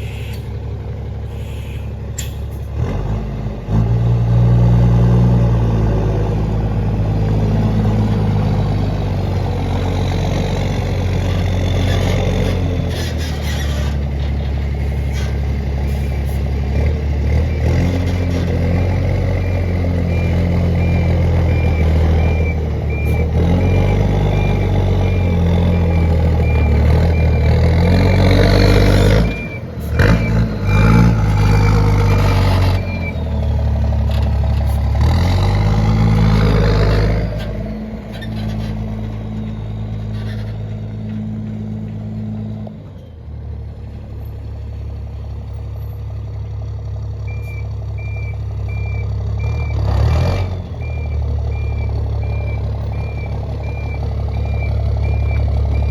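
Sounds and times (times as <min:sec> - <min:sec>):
diesel truck engine revving: 0:00.0 - 0:55.9
reversing alarm beeping: 0:19.3 - 0:33.8, 0:47.3 - 0:49.8, 0:50.7 - 0:55.9.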